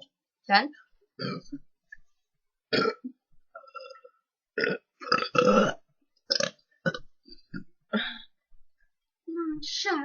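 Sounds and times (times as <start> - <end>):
person burping: 1.2 - 1.6, 2.7 - 8.2.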